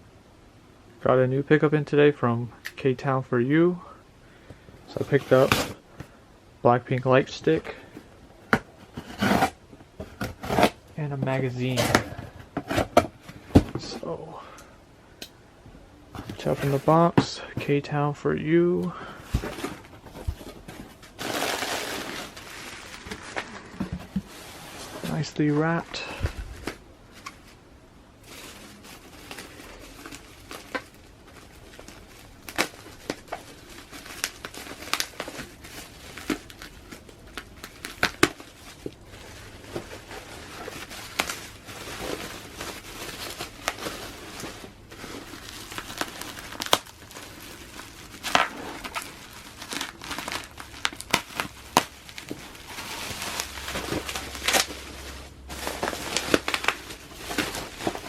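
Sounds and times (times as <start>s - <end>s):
packaging wrap crinkling and tearing: 19.1s - 27.5s, 28.2s - 58.0s.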